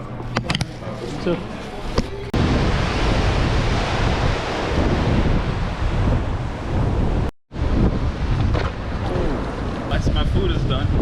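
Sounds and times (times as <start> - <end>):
wind buffeting microphone: 2.4 - 11.0.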